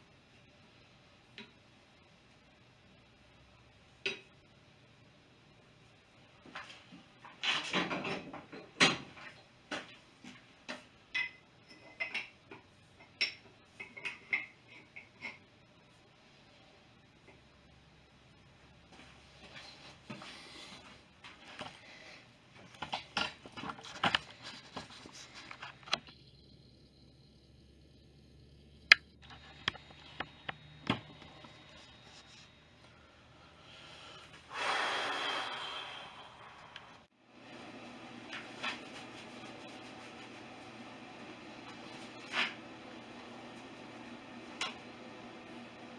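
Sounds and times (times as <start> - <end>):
rushing hiss: 34.4 - 37.1.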